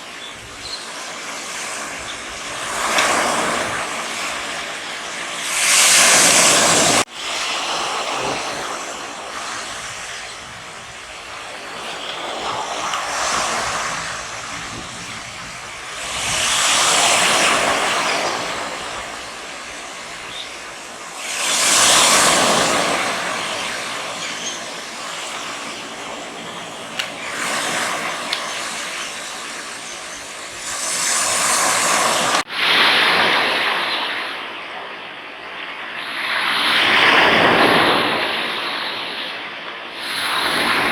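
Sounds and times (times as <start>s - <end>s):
waves breaking on shore: 0.0s - 40.9s.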